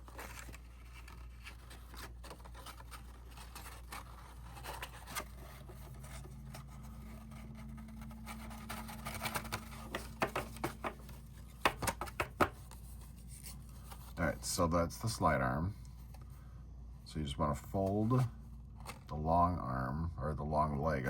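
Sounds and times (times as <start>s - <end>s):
cardstock rustling and scraping: 0.0s - 14.6s, 17.6s - 19.1s
low steady hum: 0.0s - 21.0s.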